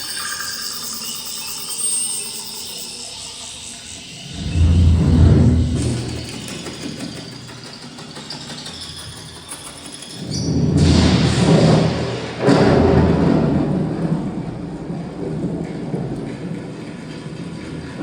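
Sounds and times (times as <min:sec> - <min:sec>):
deep rumbling surges from speakers: 0:04.2 - 0:07.0.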